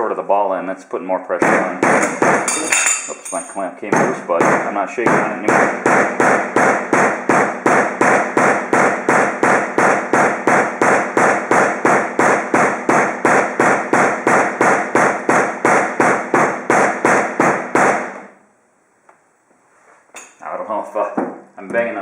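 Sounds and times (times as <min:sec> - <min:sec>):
hammer striking cable: 0:01.4 - 0:18.4.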